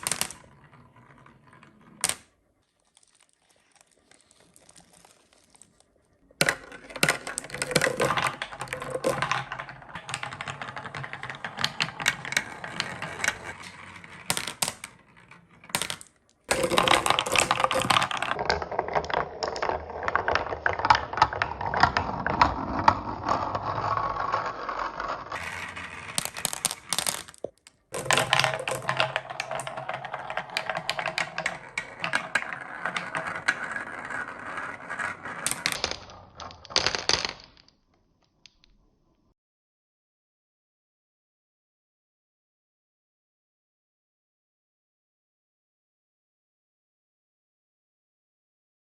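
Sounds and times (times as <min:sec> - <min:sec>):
marbles rattling down wooden run: 0:00.0 - 0:02.3, 0:06.4 - 0:37.7.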